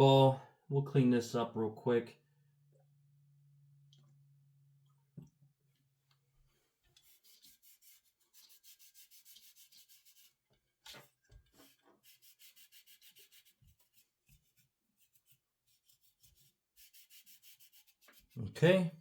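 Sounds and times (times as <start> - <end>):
cotton ball rubbing: 6.9 - 10.4, 11.6 - 18.6.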